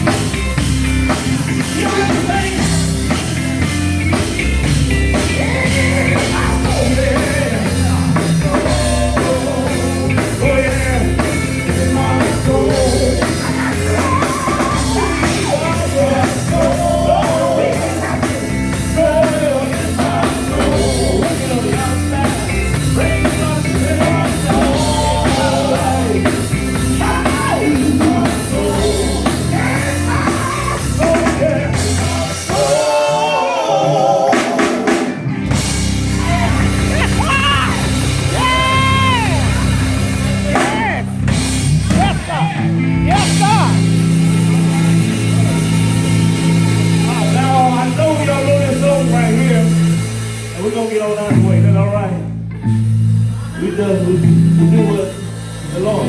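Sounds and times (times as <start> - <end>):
drum kit: 0.0 - 56.0
gospel band playing: 0.0 - 56.0
person singing: 5.1 - 35.3, 36.1 - 41.1.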